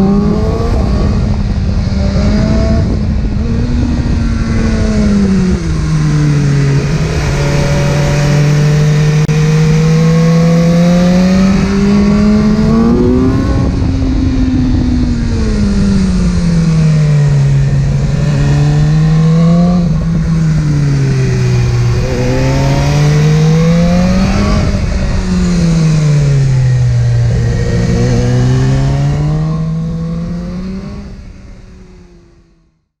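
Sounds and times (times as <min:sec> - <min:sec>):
motorcycle engine revving: 0:00.0 - 0:32.5.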